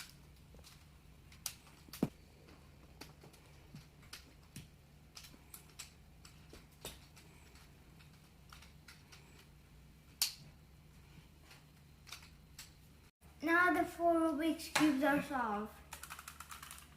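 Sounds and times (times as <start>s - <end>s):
plastic puzzle clicks: 15.9s - 16.9s.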